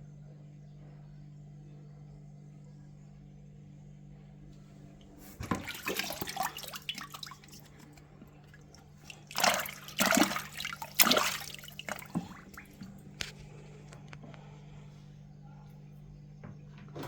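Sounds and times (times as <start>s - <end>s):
steady low hum: 0.0s - 17.0s
water splashing and sloshing: 4.8s - 14.6s.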